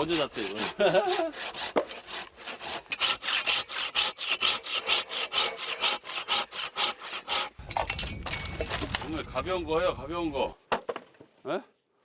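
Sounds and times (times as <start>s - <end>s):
hand saw cutting wood: 0.0s - 7.6s.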